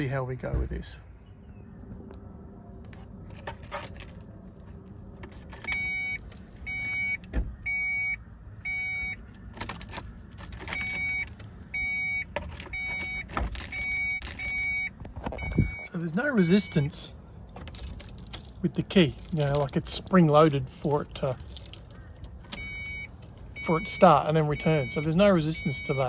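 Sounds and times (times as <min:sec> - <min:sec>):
ignition key jangling: 0:03.2 - 0:07.8, 0:08.7 - 0:26.0
car warning chime beeping: 0:05.6 - 0:17.1, 0:22.5 - 0:26.0.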